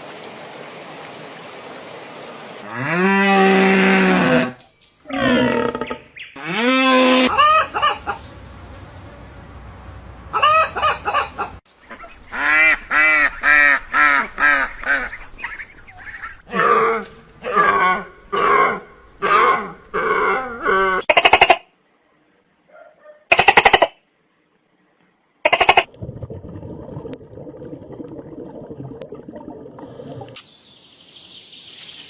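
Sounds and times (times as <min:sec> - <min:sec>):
cow mooing: 0:02.7 - 0:05.8, 0:06.4 - 0:07.7
fowl calling: 0:06.4 - 0:16.4.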